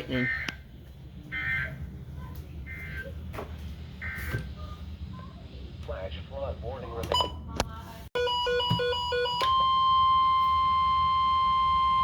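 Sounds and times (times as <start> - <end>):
steady warning alarm tone: 8.2 - 12.0.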